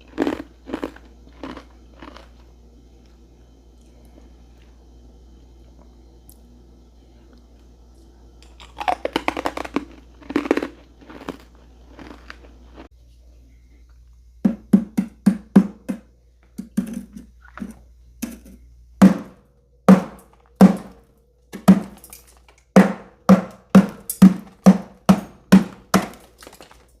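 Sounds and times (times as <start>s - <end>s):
chewing crunchy frost: 0.0s - 4.8s, 8.4s - 12.9s.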